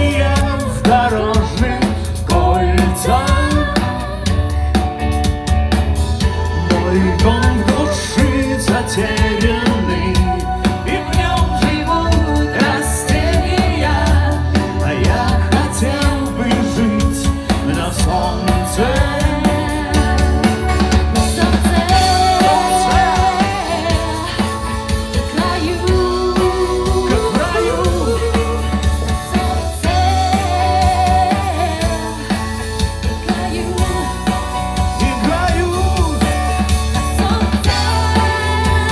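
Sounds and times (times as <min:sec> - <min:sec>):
song with heavy bass and drums: 0:00.0 - 0:38.9.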